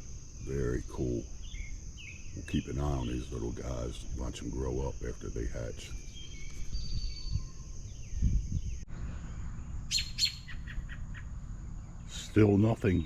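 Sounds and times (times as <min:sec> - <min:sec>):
bird alarm calls: 0:00.6 - 0:03.8, 0:09.1 - 0:13.0.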